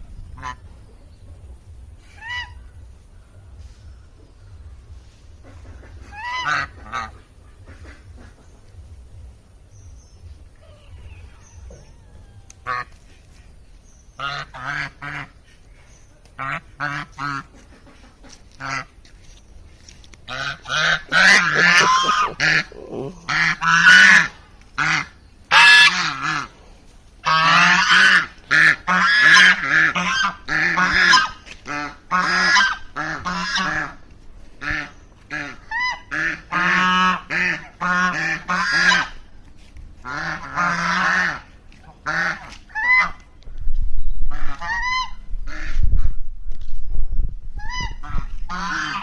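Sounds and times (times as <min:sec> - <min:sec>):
low rumble: 0:00.0 - 0:24.6, 0:43.3 - 0:48.6
geese honking: 0:00.4 - 0:00.7, 0:02.0 - 0:03.8, 0:04.6 - 0:09.4, 0:10.4 - 0:13.4, 0:14.1 - 0:15.7, 0:16.4 - 0:19.1, 0:20.2 - 0:39.4, 0:40.0 - 0:43.3, 0:44.3 - 0:45.8, 0:47.6 - 0:49.0.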